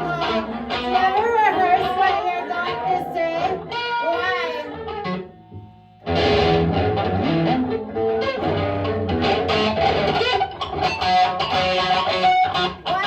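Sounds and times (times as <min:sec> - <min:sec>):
loud live noise music: 0:06.0 - 0:13.0.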